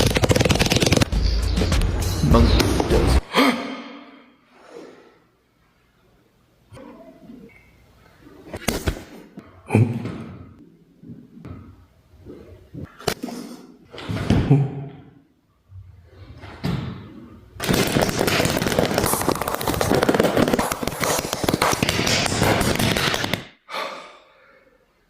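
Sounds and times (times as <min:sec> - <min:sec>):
continuous noisy beatbox sound: 0:00.0 - 0:03.2, 0:17.8 - 0:23.4.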